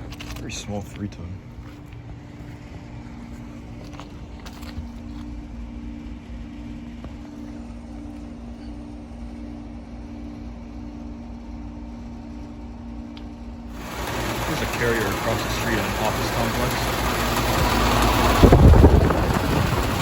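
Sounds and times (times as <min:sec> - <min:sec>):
heat pump compressor hum: 0:00.0 - 0:20.0
low rumble: 0:10.6 - 0:20.0.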